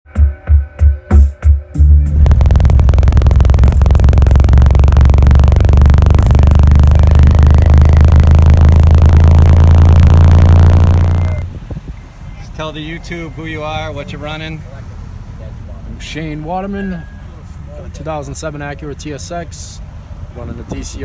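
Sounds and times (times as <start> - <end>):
loud subwoofer bass: 2.0 - 11.5.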